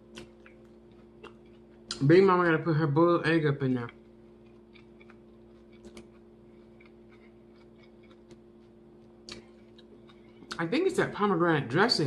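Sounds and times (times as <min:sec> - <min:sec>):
chewing salad: 0:00.0 - 0:02.3, 0:03.7 - 0:10.7
steady low hum: 0:00.0 - 0:12.0.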